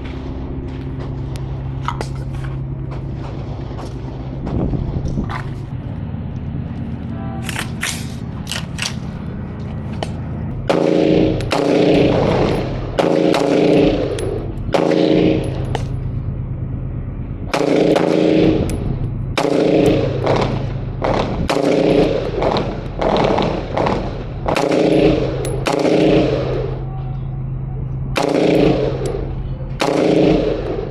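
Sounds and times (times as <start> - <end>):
gunshots: 10.6 - 15.7, 17.5 - 18.8, 19.4 - 26.8, 28.2 - 30.9.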